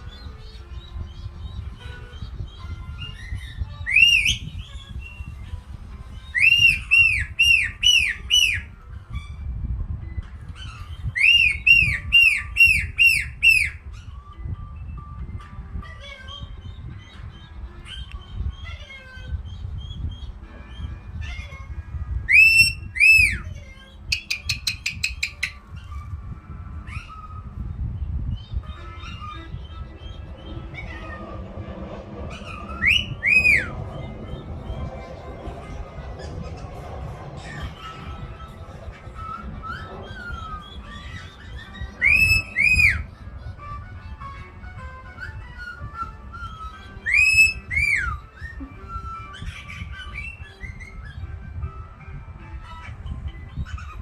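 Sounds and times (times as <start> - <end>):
parrot whistling: 0.0 - 9.4, 10.2 - 14.4, 15.9 - 51.9, 52.5 - 54.0
parrot chirps: 2.6 - 5.3, 6.3 - 9.4, 10.6 - 14.2, 22.3 - 26.1, 26.8 - 27.4, 32.3 - 34.7, 36.2 - 43.2, 45.1 - 51.2.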